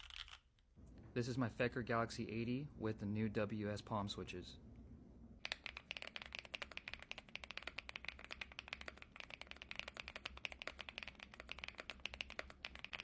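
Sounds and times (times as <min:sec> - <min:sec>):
fast mechanical keyboard typing: 0:05.4 - 0:13.0.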